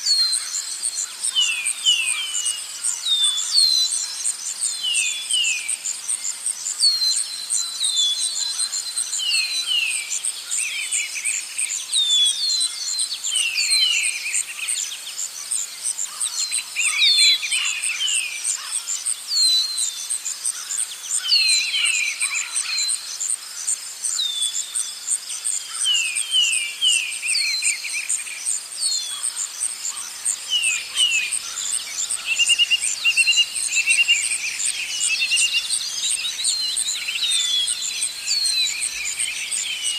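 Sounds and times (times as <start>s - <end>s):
high-pitched insect trill: 0.0s - 39.9s
birds whistling and chirping: 19.3s - 23.1s, 24.1s - 39.9s.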